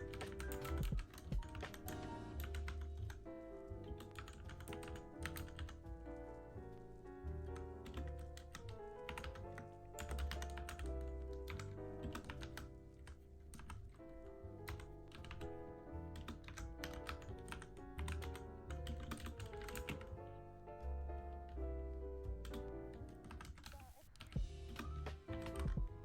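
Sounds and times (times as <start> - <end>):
mechanical keyboard typing: 0.0 - 3.2, 3.8 - 5.8, 7.6 - 13.9, 14.7 - 15.5, 16.1 - 20.1, 22.4 - 25.9
soft background music: 0.0 - 26.0.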